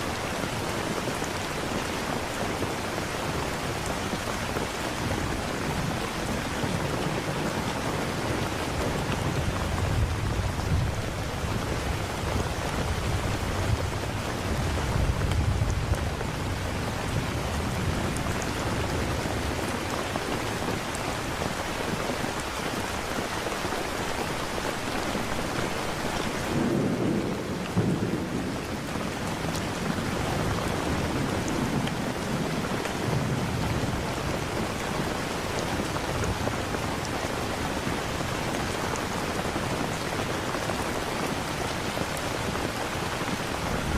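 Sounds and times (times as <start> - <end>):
steady rain: 0.0 - 43.9
low rolling thunder: 5.0 - 19.6, 26.4 - 34.7.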